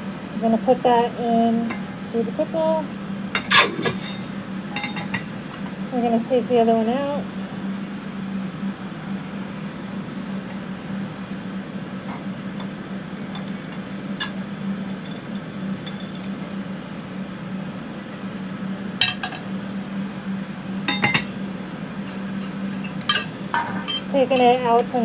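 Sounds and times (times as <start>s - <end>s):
ventilation fans humming: 0.0s - 25.0s
metal tongs clinking on pot: 22.4s - 25.0s.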